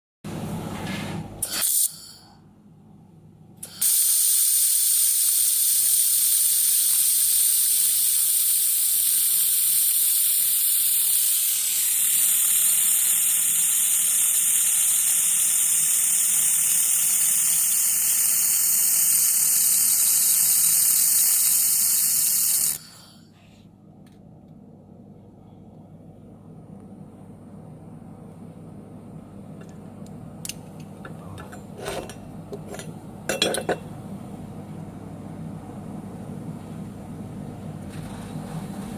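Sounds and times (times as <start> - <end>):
welding torch hissing: 3.6 - 23.2.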